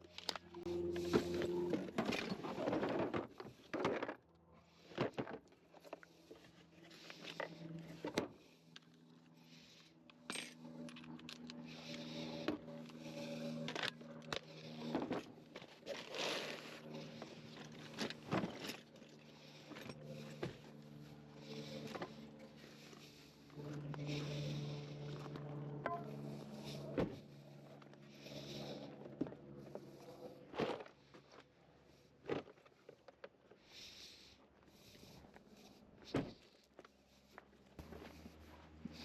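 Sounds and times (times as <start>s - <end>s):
steady low hum: 4.5s - 30.7s
metal tools clinking: 10.2s - 12.0s.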